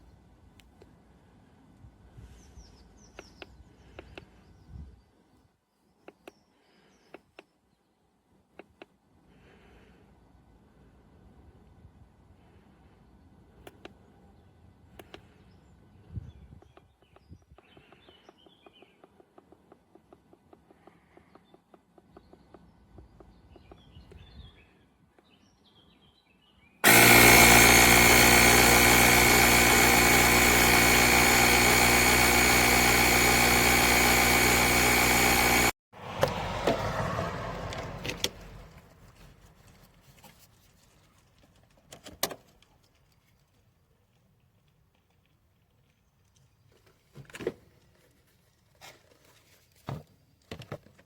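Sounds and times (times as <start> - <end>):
air compressor running: 26.8 - 35.8.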